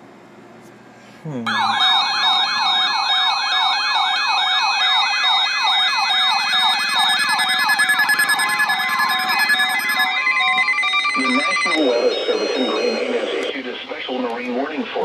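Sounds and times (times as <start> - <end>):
electronic alert siren sweeping: 1.5 - 13.5
steady tones: 5.5 - 13.4.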